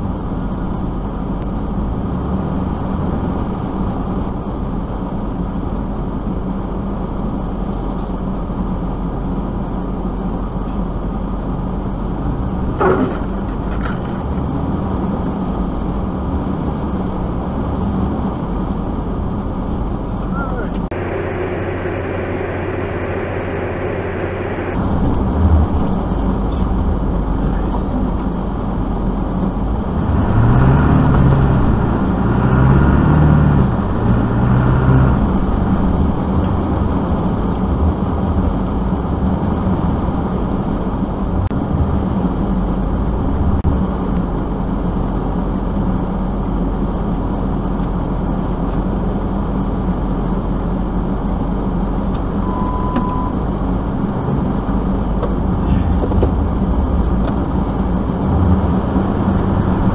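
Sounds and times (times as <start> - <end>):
vehicle engine revving: 12.2 - 40.6, 53.8 - 59.9
high beep: 20.9 - 24.8, 52.4 - 53.4.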